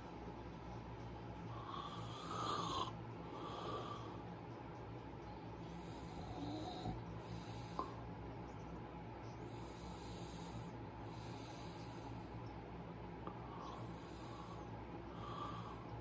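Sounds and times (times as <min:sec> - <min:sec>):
person snoring: 0:01.6 - 0:04.2.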